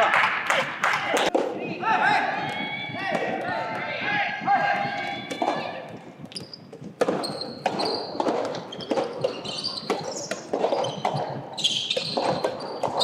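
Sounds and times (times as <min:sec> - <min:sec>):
rubber ball striking and bouncing: 0:02.2 - 0:13.0
shoes squeaking on court floor: 0:04.8 - 0:13.0.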